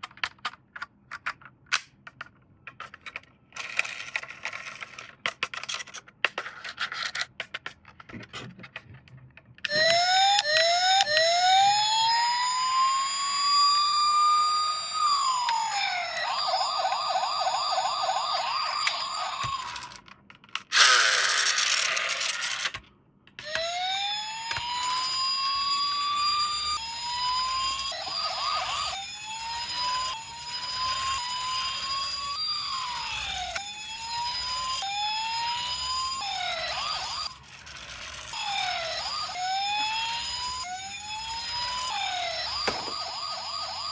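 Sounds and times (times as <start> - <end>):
toy electronic siren: 9.6 - 20.0, 23.4 - 43.9.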